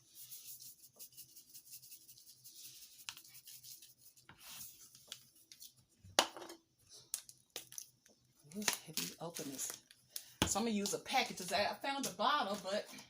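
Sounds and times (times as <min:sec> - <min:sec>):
spice shaker shaking: 0:00.2 - 0:04.0.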